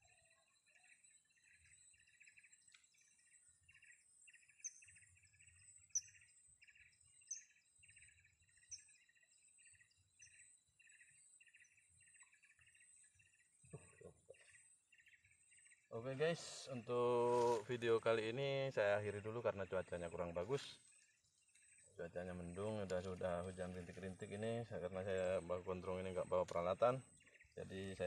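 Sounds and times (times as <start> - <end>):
insect chirping: 0.6 - 16.4.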